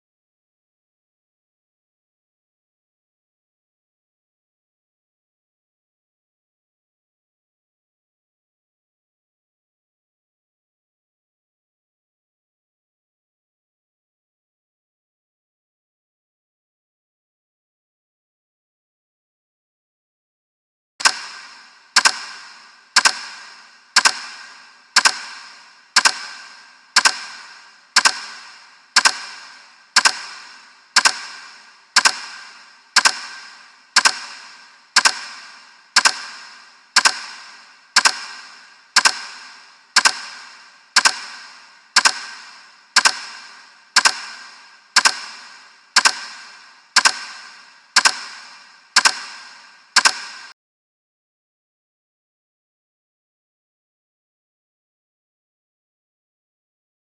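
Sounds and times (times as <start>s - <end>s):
ringing clock tick: 21.0s - 50.6s.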